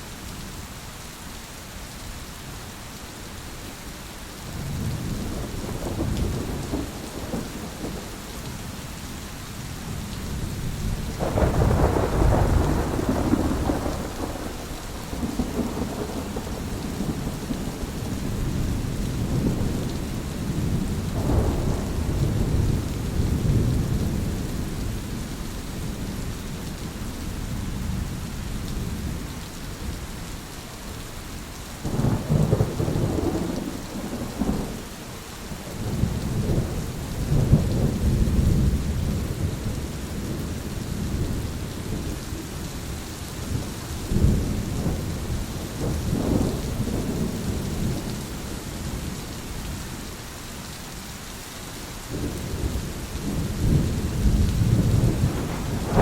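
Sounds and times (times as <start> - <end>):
steady rain: 0.0 - 56.0
rolling thunder: 4.6 - 8.6, 9.9 - 26.3, 31.9 - 34.9, 35.7 - 42.2, 43.4 - 49.8, 52.1 - 56.0.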